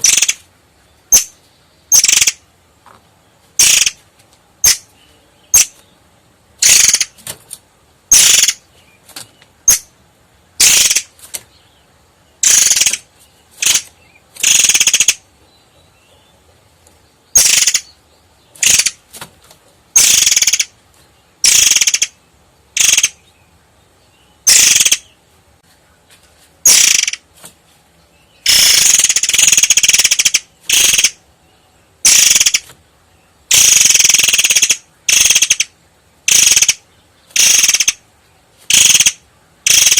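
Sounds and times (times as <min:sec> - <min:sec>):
bird singing high phrases: 0:00.0 - 0:02.4, 0:03.4 - 0:04.0, 0:04.6 - 0:07.2, 0:08.1 - 0:09.9, 0:10.6 - 0:16.5, 0:17.1 - 0:19.0, 0:19.9 - 0:25.2, 0:26.6 - 0:27.2, 0:28.1 - 0:38.0, 0:38.7 - 0:39.9.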